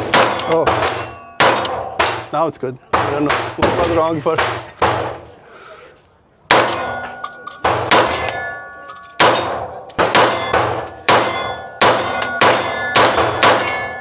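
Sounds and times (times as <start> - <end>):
carbine gunshots: 0.0 - 2.3, 9.2 - 14.0
steel target ringing: 0.0 - 2.4, 6.5 - 14.0.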